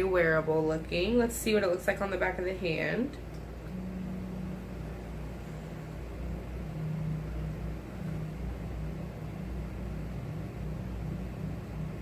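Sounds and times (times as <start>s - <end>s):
low hum with faint hiss: 0.0s - 12.0s.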